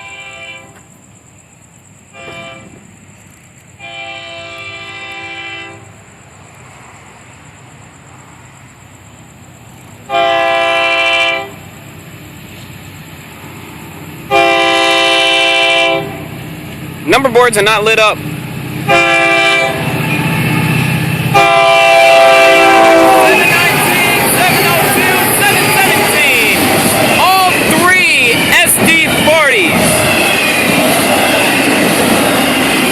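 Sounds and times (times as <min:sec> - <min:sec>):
locomotive air horn blasts: 0:00.0 - 0:00.8, 0:02.1 - 0:02.7, 0:03.8 - 0:05.9, 0:10.1 - 0:11.6, 0:14.3 - 0:16.2, 0:18.9 - 0:19.9, 0:21.3 - 0:26.2.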